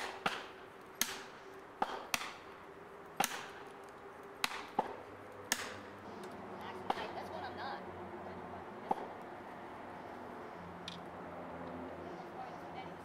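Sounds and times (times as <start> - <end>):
hammer striking wedges: 4.4 - 5.8.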